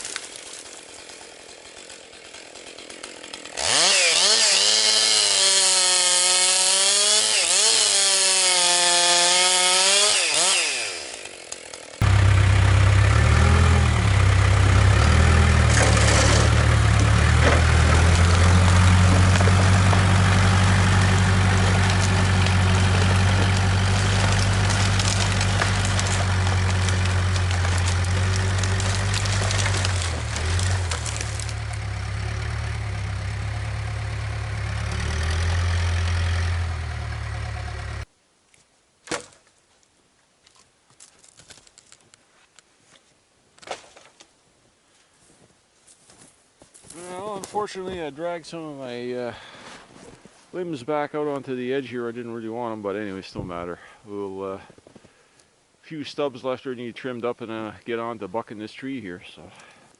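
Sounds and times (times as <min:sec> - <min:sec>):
chainsaw cutting wood: 0:00.0 - 0:38.1
lower engine with cutting rasp: 0:00.1 - 0:38.1.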